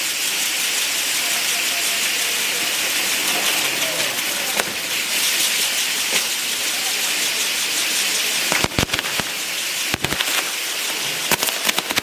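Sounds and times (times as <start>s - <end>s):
faint crowd voices: 0.0s - 11.6s
fireworks crackling and hissing: 0.0s - 12.0s
sharp firework crack: 2.9s - 12.0s.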